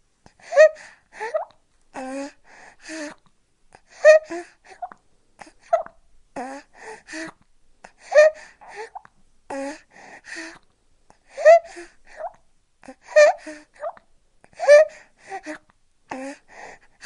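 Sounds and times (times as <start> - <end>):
squeaky throat sound: 0.6 - 1.6, 4.1 - 6.6, 13.1 - 14.0.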